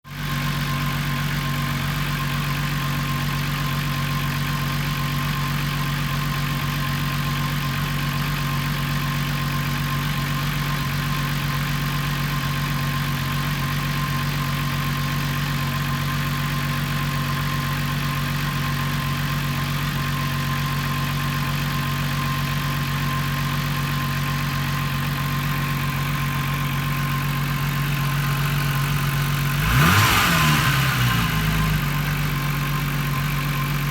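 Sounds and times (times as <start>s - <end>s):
car engine idling roughly: 0.0s - 33.9s.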